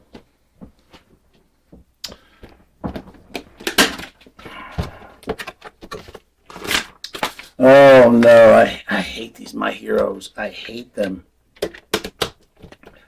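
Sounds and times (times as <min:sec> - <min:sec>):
dull thump: 0:04.6 - 0:05.2.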